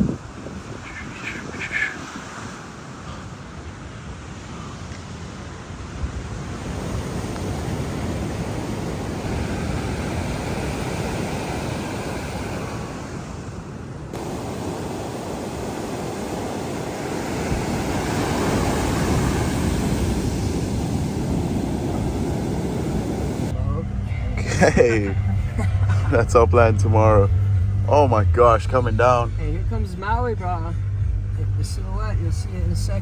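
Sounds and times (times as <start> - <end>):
ocean surf breaking: 0.0 - 23.6
wind on microphone: 0.0 - 23.6.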